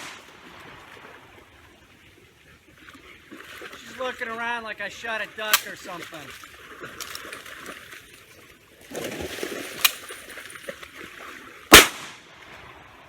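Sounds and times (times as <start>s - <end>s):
shotgun blast: 0.0s - 0.3s, 11.7s - 12.3s
dog swimming splashing water: 0.0s - 13.0s.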